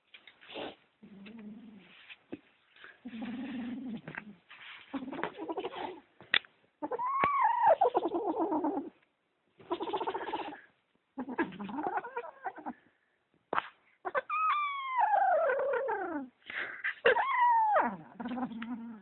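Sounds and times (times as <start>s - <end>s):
kitten growling and yowling: 6.8s - 9.0s, 9.6s - 12.8s, 14.0s - 16.4s, 17.0s - 19.0s.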